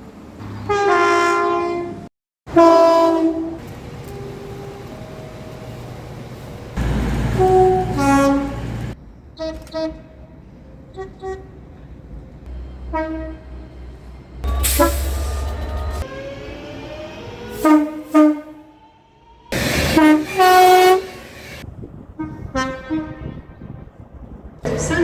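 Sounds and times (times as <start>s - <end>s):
rush of passing train: 0.0s - 1.8s, 2.5s - 25.0s
train horn blasts: 0.7s - 3.7s, 6.8s - 10.2s, 12.5s - 13.8s, 14.4s - 16.1s, 17.6s - 18.8s, 19.6s - 21.6s, 22.2s - 24.0s.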